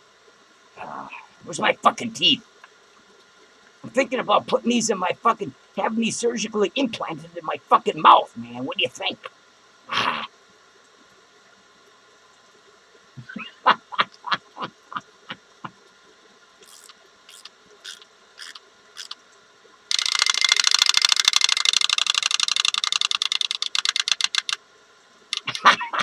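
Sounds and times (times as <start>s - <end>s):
chattering teeth toy clattering: 16.6s - 19.2s, 19.9s - 24.6s, 25.3s - 25.7s
short clicks: 16.6s - 19.2s, 19.9s - 24.6s, 25.3s - 25.8s.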